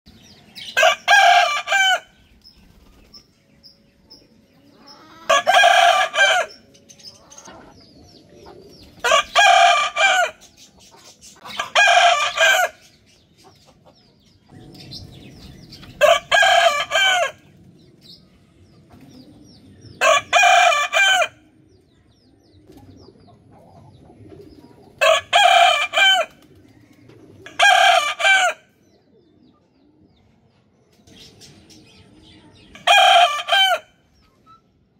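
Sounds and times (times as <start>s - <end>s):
rooster crowing: 5.3s - 6.6s, 9.1s - 10.4s.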